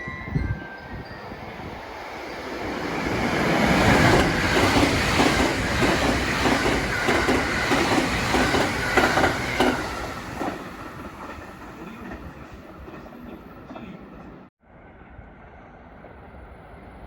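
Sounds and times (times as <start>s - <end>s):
train wheels clattering on rail joints: 3.3s - 14.4s.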